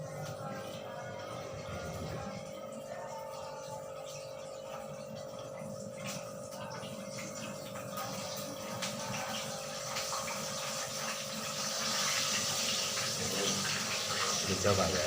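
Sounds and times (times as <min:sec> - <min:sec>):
fish sizzling in hot oil: 0:06.6 - 0:15.0.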